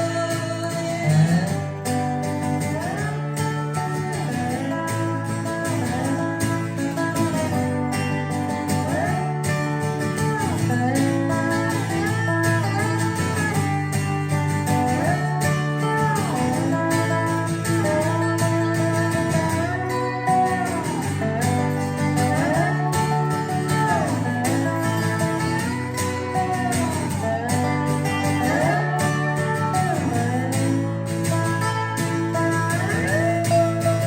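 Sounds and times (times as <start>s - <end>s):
bass and rhythm guitar: 0.0s - 34.0s
lead guitar solo: 0.0s - 34.0s.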